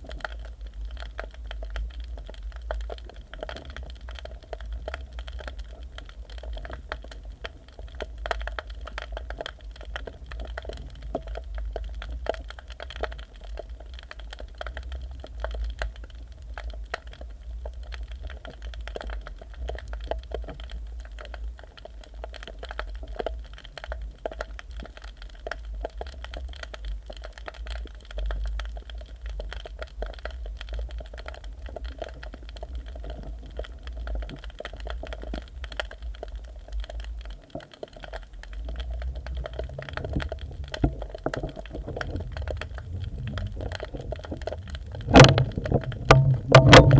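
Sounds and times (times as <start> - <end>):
dense crackle of tiny clicks: 0.0 - 46.9
low underwater rumble: 38.4 - 46.9.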